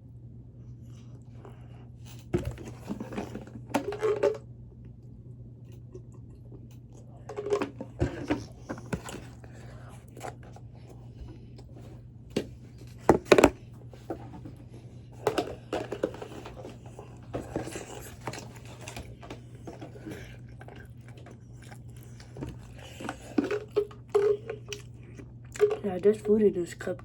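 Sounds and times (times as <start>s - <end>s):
steady low hum: 0.0s - 27.0s
chewing and crunching: 4.9s - 26.9s
cup knocking and scraping: 12.4s - 14.5s, 22.4s - 24.9s.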